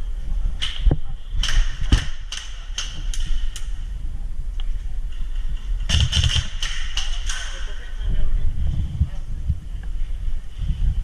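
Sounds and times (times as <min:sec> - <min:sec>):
sharp clicks or knocks: 0:05.9 - 0:07.6.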